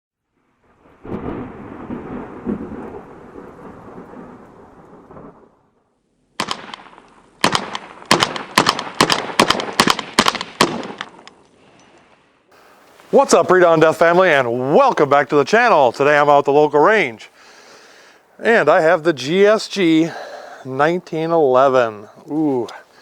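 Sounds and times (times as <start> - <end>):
thunder-like rumble: 0.6 - 5.8
rapid gunshots: 6.4 - 11.1.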